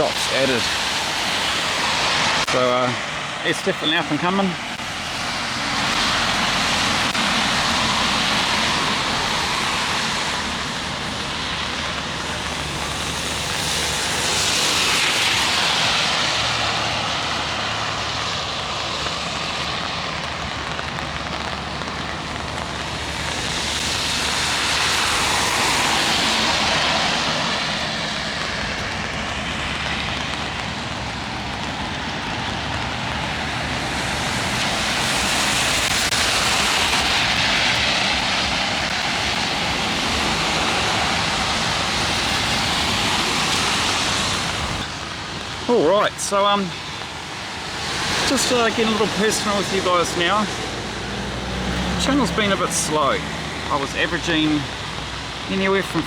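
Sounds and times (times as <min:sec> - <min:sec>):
steady rain: 0:00.0 - 0:56.0
tyres hissing on wet road: 0:00.0 - 0:56.0.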